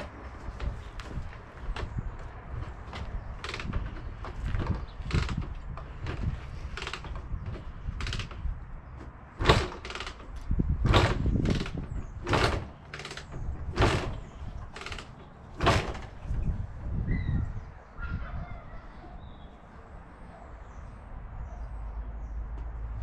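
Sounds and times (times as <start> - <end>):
dirt bike kick-start clattering: 9.4 - 16.1
engine turning over: 9.4 - 16.1.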